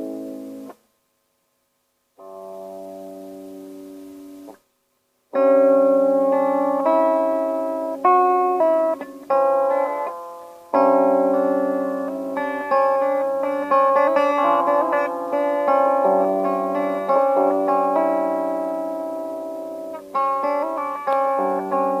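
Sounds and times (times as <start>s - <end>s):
guitar playing single notes: 5.4s - 22.0s.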